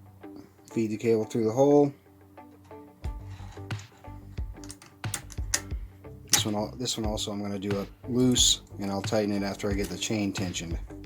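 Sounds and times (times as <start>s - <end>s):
music with held notes: 0.0s - 11.0s
small metal parts clicking: 3.3s - 5.7s.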